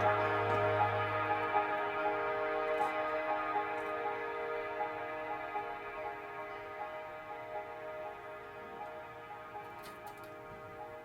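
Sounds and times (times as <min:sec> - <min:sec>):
soft sustained background music: 0:00.0 - 0:11.0
faint clicks: 0:08.8 - 0:11.0.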